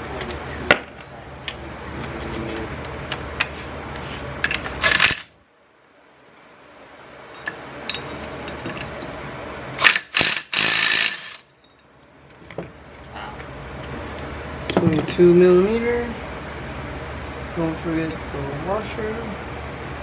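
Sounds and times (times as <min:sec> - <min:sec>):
metal tools clinking on engine parts: 0:04.4 - 0:05.3, 0:07.3 - 0:09.2, 0:09.8 - 0:13.1.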